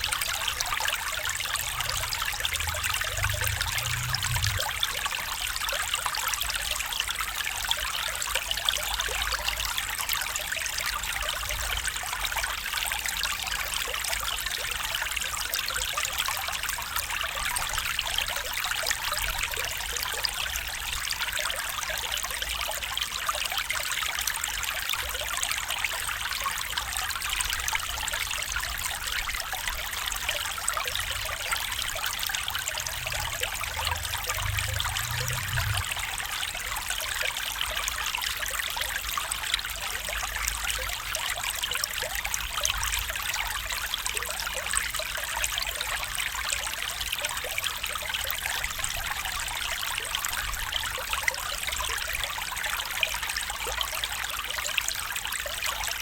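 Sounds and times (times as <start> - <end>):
stream babbling over stones: 0.0 - 56.0
faint low rumble: 0.4 - 5.5, 28.6 - 37.5.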